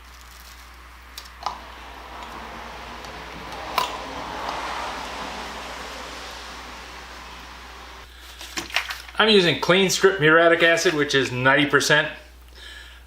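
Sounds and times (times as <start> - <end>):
soft rushing hiss: 0.4 - 10.0.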